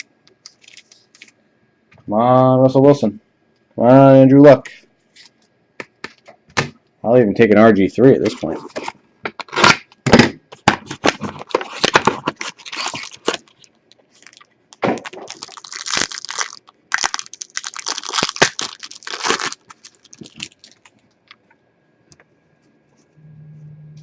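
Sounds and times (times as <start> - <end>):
plastic wrapper tearing and crinkling: 0.0 - 1.4, 8.5 - 9.9, 10.8 - 21.0.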